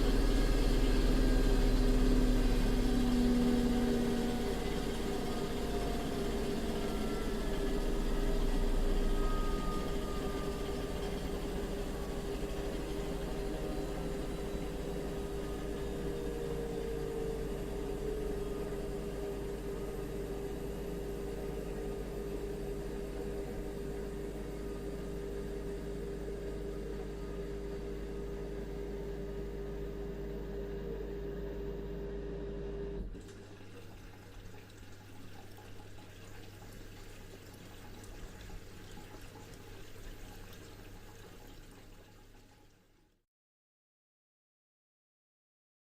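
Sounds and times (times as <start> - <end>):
washing machine spinning: 0.0 - 43.0
water trickling: 33.1 - 43.0.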